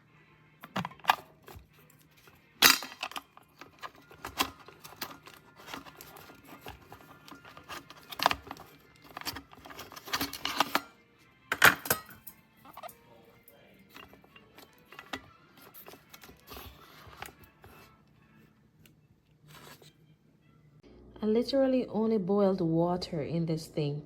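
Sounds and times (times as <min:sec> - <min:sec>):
plastic and glass clattering: 0:00.6 - 0:12.9, 0:13.8 - 0:17.8.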